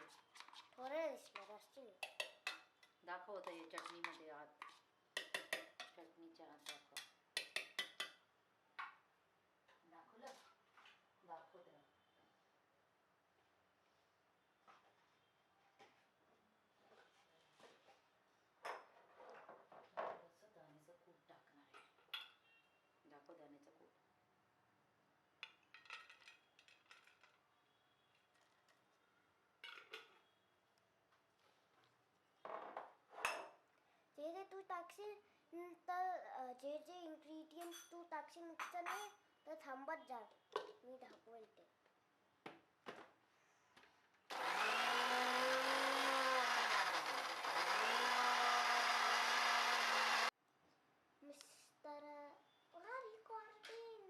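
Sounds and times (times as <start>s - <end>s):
electric mixer grinder whine: 44.3s - 50.3s.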